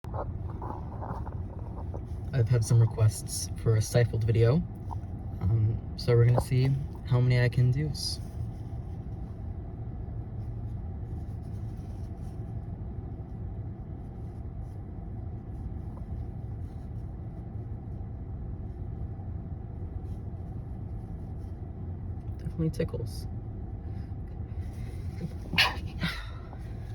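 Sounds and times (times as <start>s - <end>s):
low background rumble: 0.0s - 26.9s.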